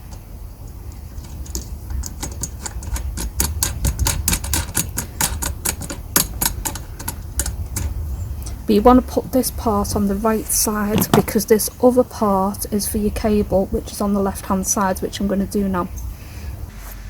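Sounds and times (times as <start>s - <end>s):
handle screwing on with sharp clicks: 11.0s - 11.4s.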